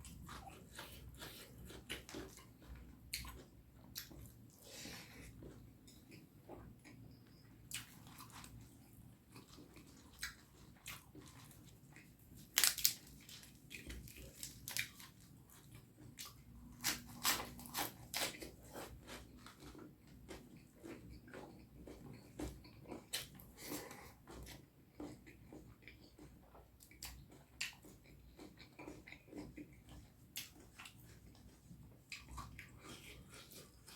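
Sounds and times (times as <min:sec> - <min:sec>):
person chewing food: 0:00.0 - 0:33.9.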